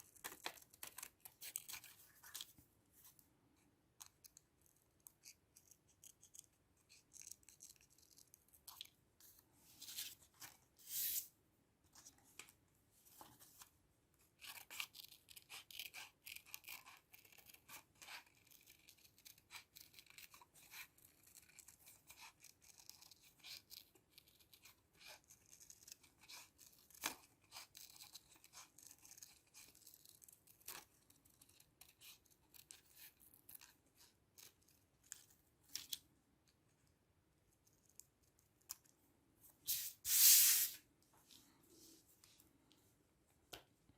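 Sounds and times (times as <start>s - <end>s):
paper rustling and tearing: 39.7s - 40.8s.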